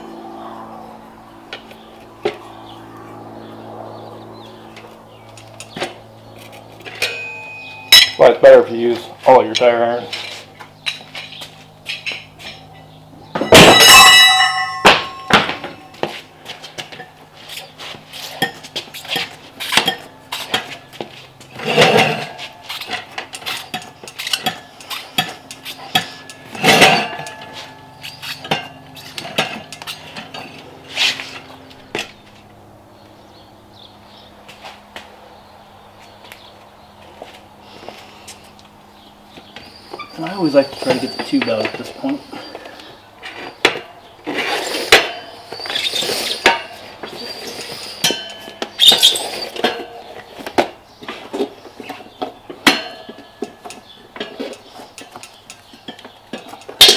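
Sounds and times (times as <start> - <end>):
tire irons clinking on rim: 4.6 - 32.3, 38.4 - 56.9
ringing metal clang: 6.9 - 8.4, 12.0 - 16.2, 18.4 - 20.7, 23.7 - 30.6, 47.5 - 50.0, 52.6 - 56.9.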